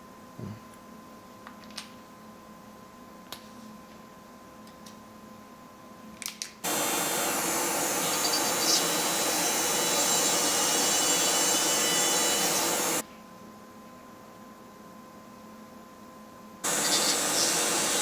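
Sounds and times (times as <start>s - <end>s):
machine grinding noise: 6.7s - 13.0s, 16.7s - 18.0s.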